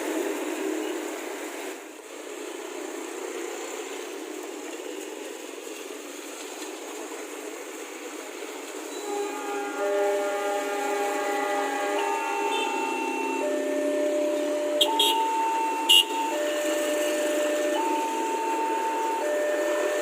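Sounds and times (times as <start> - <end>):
rushing noise of rail traffic: 0.0 - 20.0
locomotive horn blast: 8.9 - 20.0.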